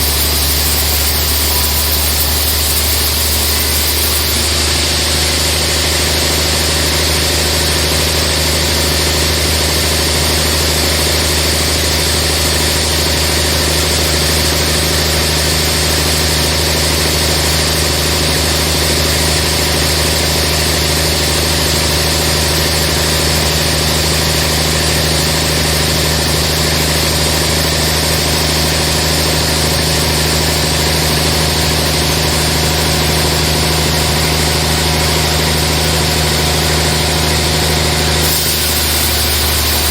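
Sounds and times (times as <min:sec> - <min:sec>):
steady hiss: 0:00.0 - 0:04.5, 0:38.2 - 0:39.9
sawmill machinery humming: 0:00.0 - 0:39.9.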